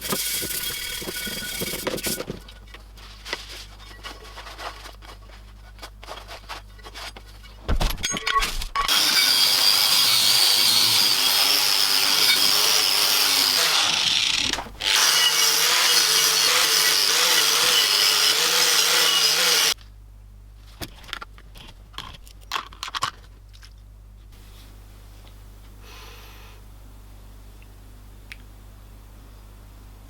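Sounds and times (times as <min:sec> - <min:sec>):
power tool sanding metal: 0:00.0 - 0:02.2, 0:08.9 - 0:19.8.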